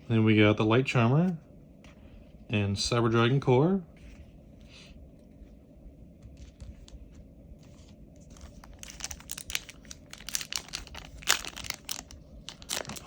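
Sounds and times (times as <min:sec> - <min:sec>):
foil wrapper crackling and tearing: 0:08.4 - 0:13.0.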